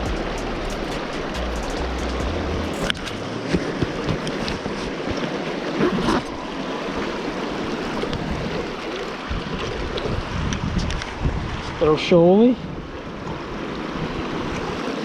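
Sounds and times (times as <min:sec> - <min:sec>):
river water rushing over rocks: 0:02.8 - 0:11.6, 0:12.8 - 0:15.0.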